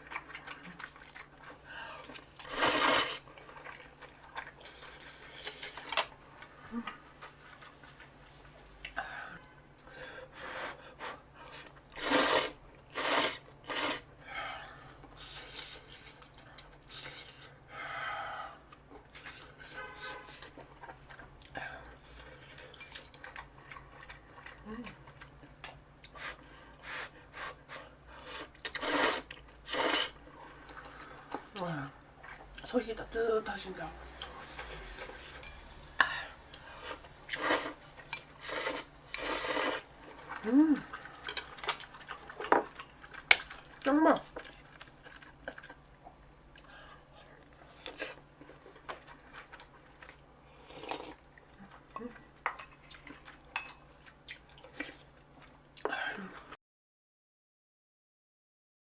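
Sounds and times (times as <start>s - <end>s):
chewing: 0.0s - 8.1s, 18.7s - 26.5s, 28.2s - 32.7s, 34.1s - 56.0s
slurping noodles: 1.5s - 4.0s, 10.7s - 14.1s, 26.1s - 30.8s, 36.6s - 42.5s, 50.5s - 51.2s
utensil scraping through food: 2.4s - 3.3s, 28.2s - 30.2s, 36.7s - 39.9s.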